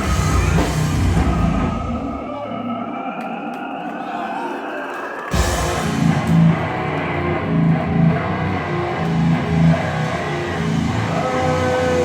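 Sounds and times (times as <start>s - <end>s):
heavy live band music: 0.0s - 2.2s, 5.4s - 12.0s.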